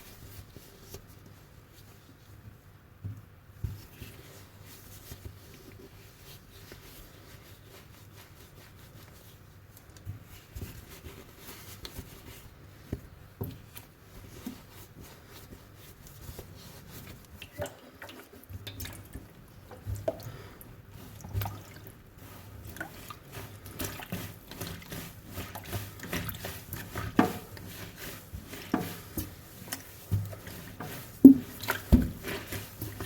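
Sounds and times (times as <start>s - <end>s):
hands rubbing objects: 22.1s - 33.0s.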